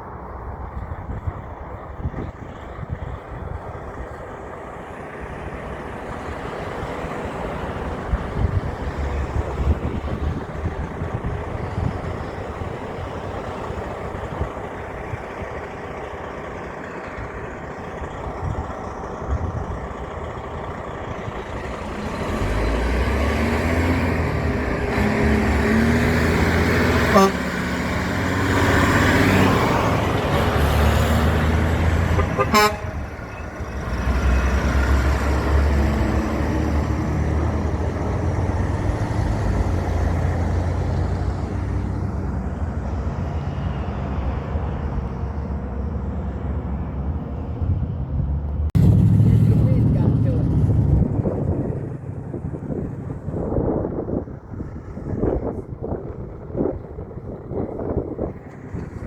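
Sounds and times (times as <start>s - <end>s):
heavy vehicle engine: 0.0s - 59.0s
truck engine passing: 0.0s - 59.0s
truck horn blasts: 26.6s - 28.3s, 32.0s - 34.4s.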